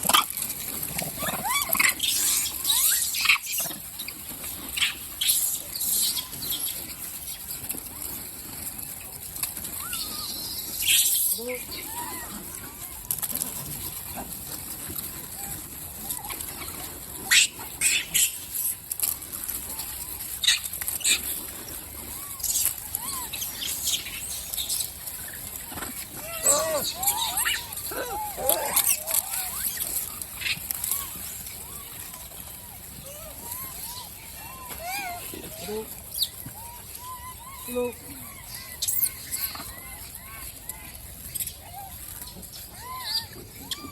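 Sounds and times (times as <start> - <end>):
rustling handling noise: 0.0 - 43.9
monkey squeaking: 1.1 - 4.1, 22.3 - 31.4, 33.1 - 39.7.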